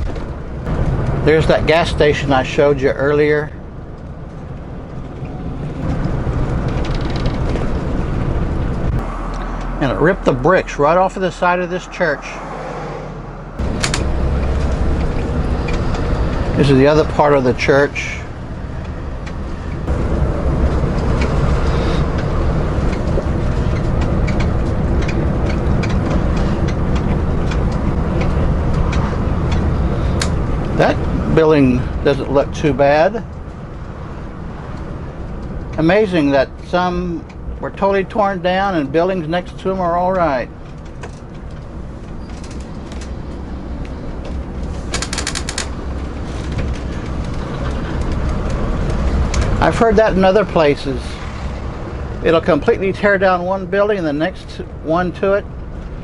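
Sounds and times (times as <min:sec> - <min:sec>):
engine and road rumble: 0:00.0 - 0:56.0
light clicks and rattles: 0:04.0 - 0:09.7, 0:39.5 - 0:49.7.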